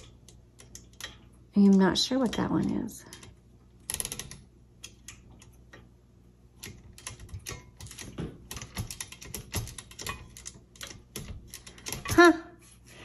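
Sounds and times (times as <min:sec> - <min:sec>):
typewriter mechanical clicks: 0:03.0 - 0:05.1.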